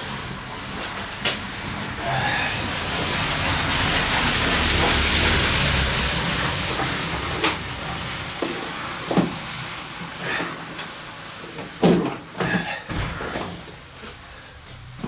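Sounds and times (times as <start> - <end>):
noisy hiss: 0.0 - 15.0
sharp knocks: 12.9 - 14.2.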